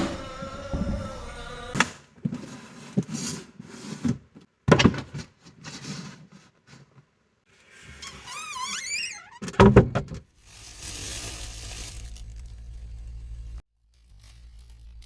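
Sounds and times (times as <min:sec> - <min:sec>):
background music: 0:00.0 - 0:01.8.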